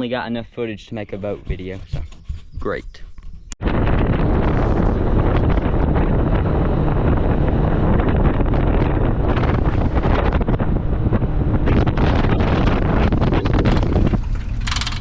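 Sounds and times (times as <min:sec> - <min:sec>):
wind buffeting microphone: 0:00.0 - 0:15.0
low rumble: 0:03.6 - 0:15.0.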